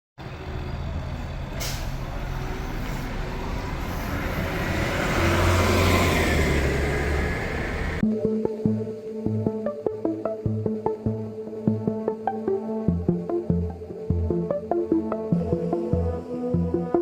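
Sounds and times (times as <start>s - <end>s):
heavy vehicle driving past: 0.2s - 8.0s.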